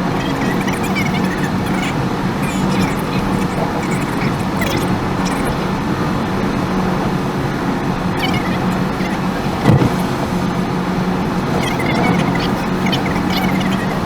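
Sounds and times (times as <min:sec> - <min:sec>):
car road and engine drone: 0:00.0 - 0:14.0
short thump: 0:09.6 - 0:10.4.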